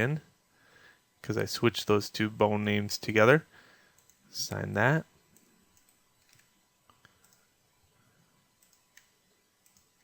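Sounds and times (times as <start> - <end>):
faint computer mouse clicks: 5.4 - 7.4.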